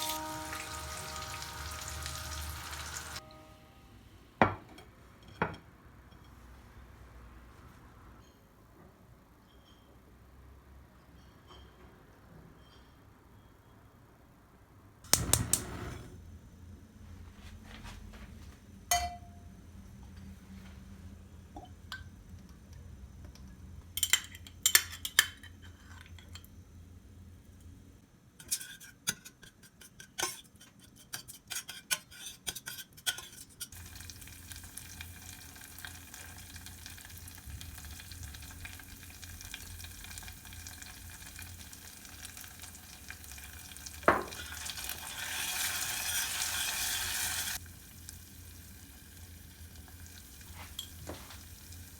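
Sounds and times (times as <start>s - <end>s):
food sizzling in a hot pan: 0.0s - 3.3s, 33.8s - 51.9s
utensils and pans clinking: 0.0s - 3.4s.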